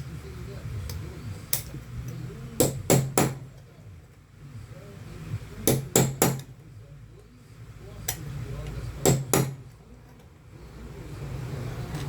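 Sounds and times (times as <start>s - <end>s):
hammer tapping sheet metal: 2.6s - 3.6s, 5.6s - 6.6s, 9.0s - 9.8s.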